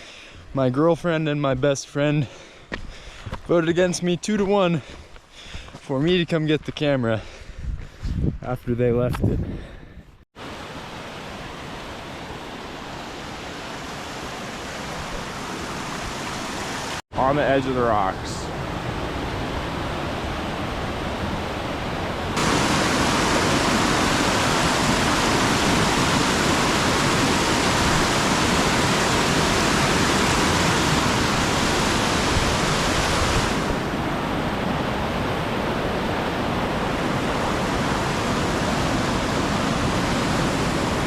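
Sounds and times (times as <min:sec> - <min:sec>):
waterfall rushing: 0:10.4 - 0:41.0.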